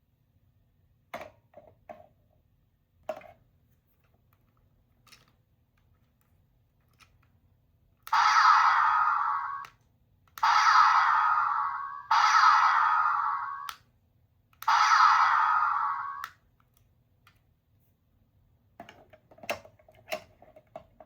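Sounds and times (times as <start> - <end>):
toy speaker electronic sound effect: 8.1 - 9.7, 10.4 - 13.8, 14.6 - 16.3.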